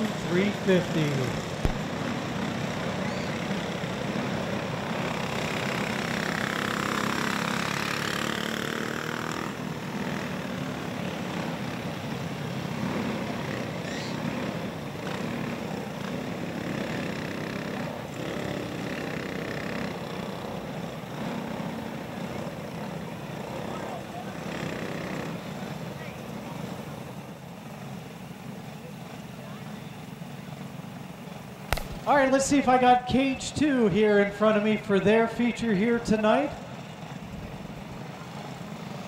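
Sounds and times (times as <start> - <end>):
go-kart passing by: 0.0 - 29.8
go-kart engines droning: 0.0 - 39.0.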